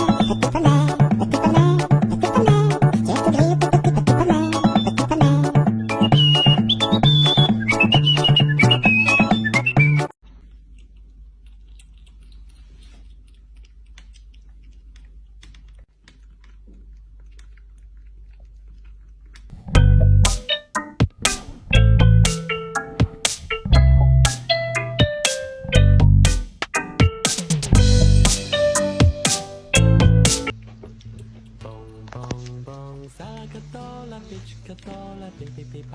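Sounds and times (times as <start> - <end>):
heavy bass: 19.5 - 20.4, 21.2 - 22.5, 23.4 - 30.5
drum hits: 19.5 - 30.5
plucked-sounding notes: 19.5 - 30.5.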